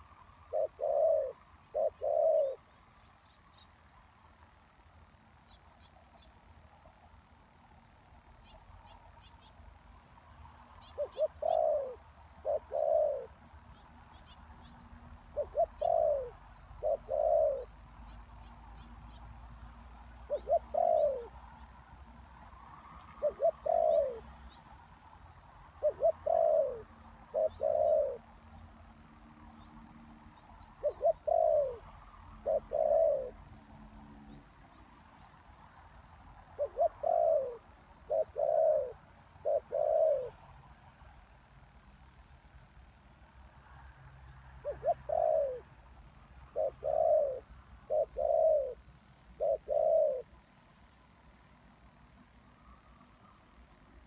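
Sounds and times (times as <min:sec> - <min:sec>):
dove cooing: 0:00.0 - 0:02.8, 0:10.8 - 0:13.8, 0:15.2 - 0:17.8, 0:20.2 - 0:21.4, 0:23.0 - 0:24.3, 0:25.8 - 0:28.3, 0:30.7 - 0:33.4, 0:36.6 - 0:40.4, 0:44.6 - 0:45.8, 0:46.5 - 0:50.4.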